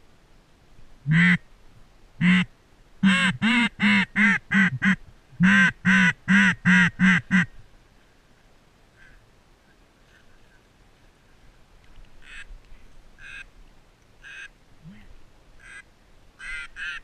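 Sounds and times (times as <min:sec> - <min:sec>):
duck call quacks: 0:01.1 - 0:01.4, 0:02.2 - 0:07.5, 0:15.6 - 0:15.8, 0:16.4 - 0:17.0.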